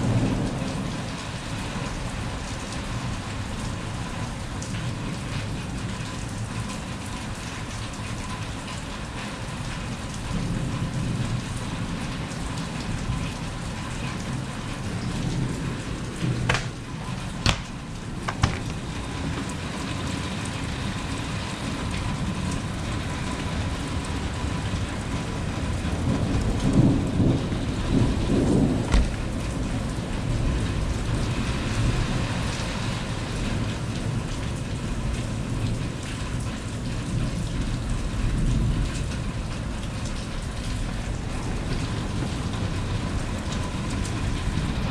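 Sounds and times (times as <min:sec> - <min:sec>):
heavy rain falling: 0:00.0 - 0:44.9
thunder rumbling: 0:14.2 - 0:20.8, 0:22.1 - 0:31.2
sharp taps: 0:16.5 - 0:18.8.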